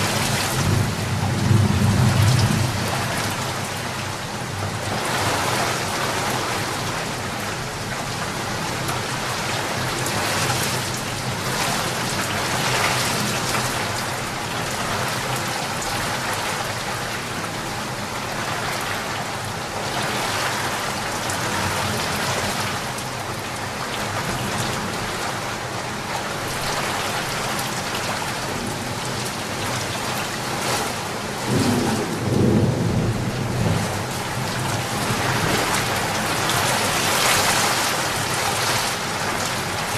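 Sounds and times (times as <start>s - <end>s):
low rumble of thunder: 0.0s - 3.8s, 31.3s - 36.8s
rain falling: 0.0s - 39.9s.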